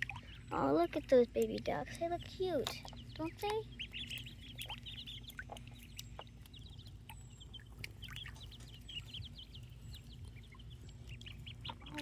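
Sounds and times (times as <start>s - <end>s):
chicks and ducklings peeping: 0.0s - 12.0s.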